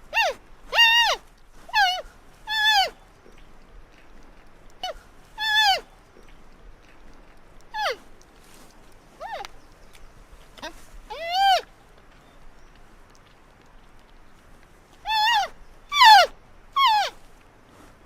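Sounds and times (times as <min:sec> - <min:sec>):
panda cub squealing: 0:00.2 - 0:02.9, 0:04.8 - 0:05.8, 0:07.8 - 0:08.0, 0:11.1 - 0:11.6, 0:15.1 - 0:17.2.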